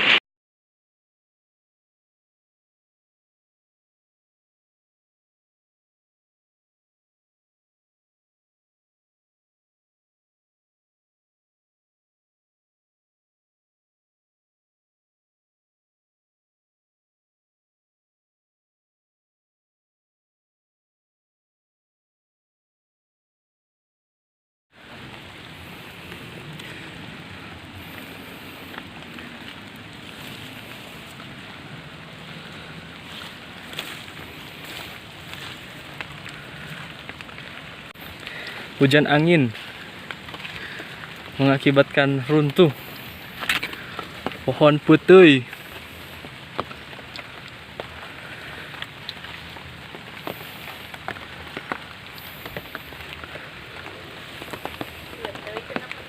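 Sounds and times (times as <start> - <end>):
heavy rain pouring: 0.0 - 0.2, 24.8 - 56.0
raindrops ticking on surfaces: 24.8 - 56.0.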